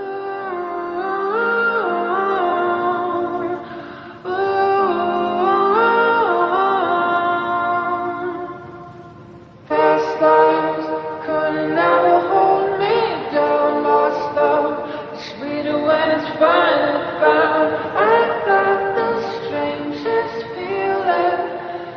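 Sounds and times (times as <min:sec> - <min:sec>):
choir singing: 0:00.0 - 0:08.8, 0:09.6 - 0:21.9.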